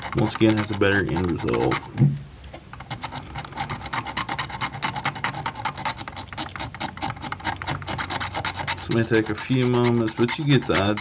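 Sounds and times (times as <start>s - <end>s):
razor blade scraping plastic: 0.0s - 2.0s, 2.6s - 11.0s.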